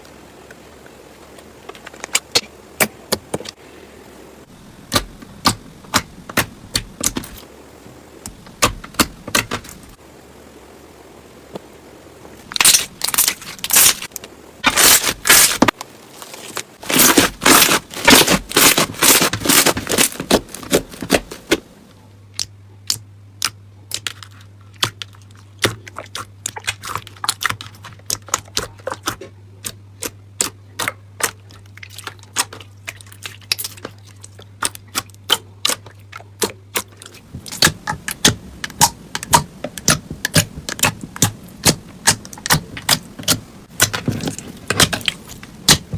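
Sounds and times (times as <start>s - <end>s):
faint steady hum: 0.0s - 45.9s
slime squelching: 12.4s - 21.7s, 22.3s - 45.9s.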